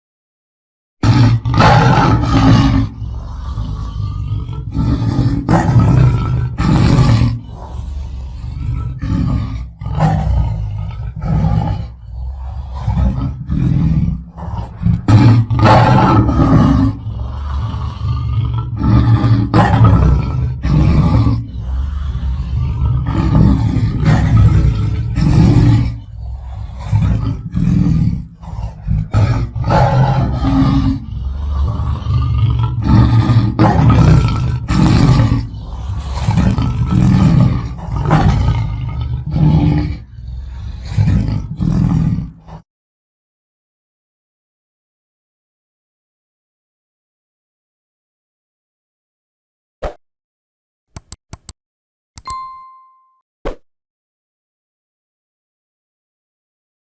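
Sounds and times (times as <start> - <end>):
lion roaring: 1.0 - 42.6.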